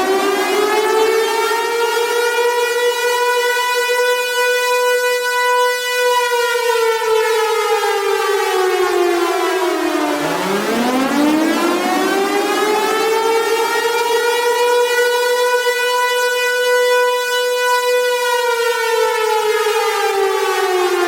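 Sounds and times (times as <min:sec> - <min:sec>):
siren wailing: 0:10.2 - 0:14.8.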